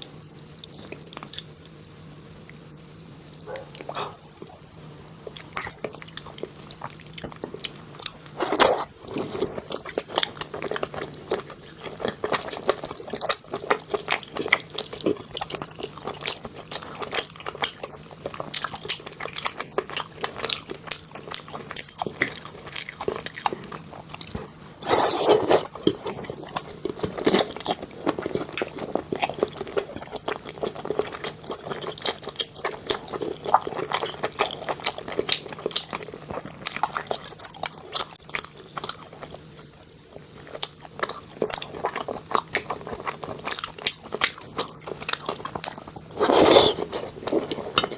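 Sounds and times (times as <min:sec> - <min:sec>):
chewing with wet mouth clicks: 0:09.6 - 0:24.5, 0:25.4 - 0:47.9.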